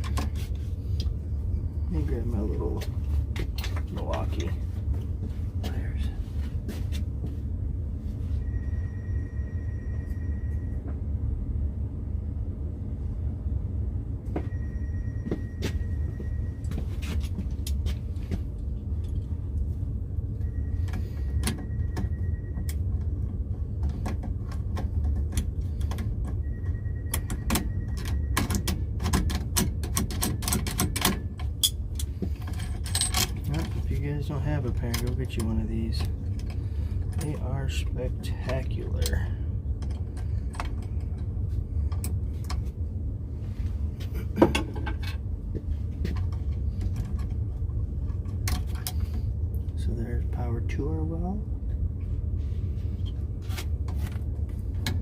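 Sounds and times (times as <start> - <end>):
steady low hum: 0.0 - 55.0
faint steady tone: 7.3 - 17.4, 18.9 - 29.2.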